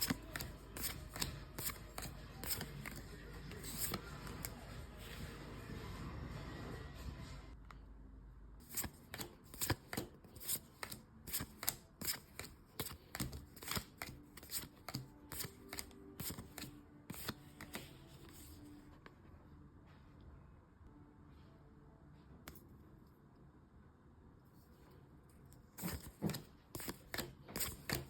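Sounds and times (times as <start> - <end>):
cards flicking: 0.0 - 4.6, 8.6 - 17.9, 25.8 - 28.0.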